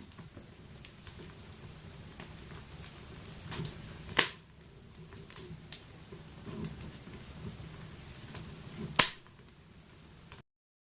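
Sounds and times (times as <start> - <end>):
low rumble of flames: 0.0 - 10.4
wood fire crackling: 0.0 - 10.4
loud pop: 4.2 - 4.4, 8.9 - 9.3.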